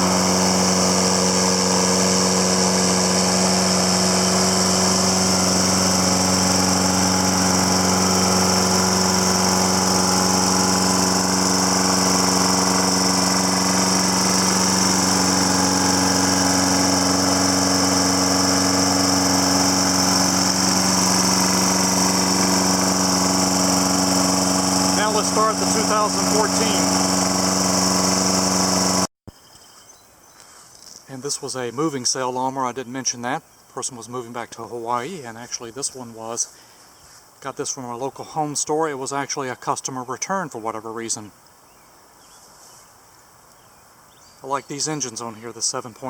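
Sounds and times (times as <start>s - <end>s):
lawn mower engine running: 0.0s - 29.1s.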